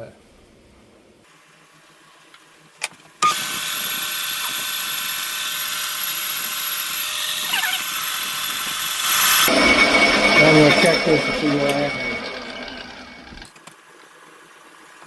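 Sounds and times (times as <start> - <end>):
metal lathe running: 3.2 - 13.5.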